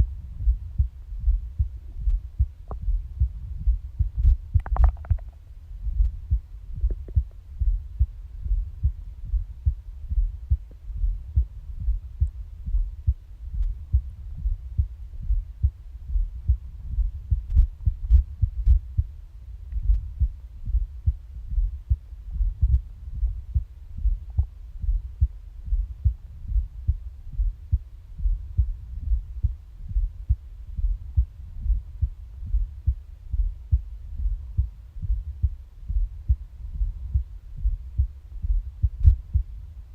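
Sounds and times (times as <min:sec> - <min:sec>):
heartbeat thumps: 0:00.0 - 0:39.9
stomach gurgles: 0:04.6 - 0:05.4.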